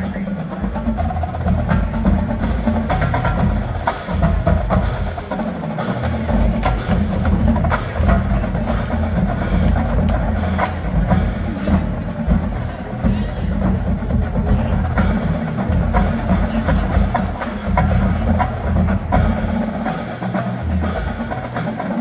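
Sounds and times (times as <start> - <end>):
low drums: 0.0 - 22.0.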